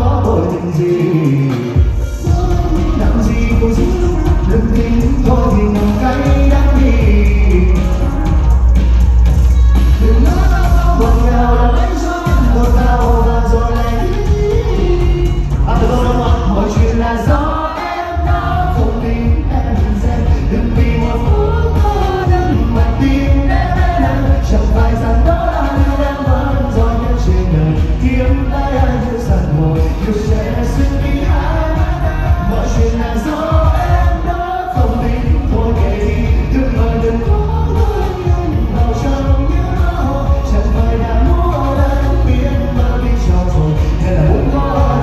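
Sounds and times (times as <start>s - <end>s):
pop ballad through sound system: 0.0s - 45.0s.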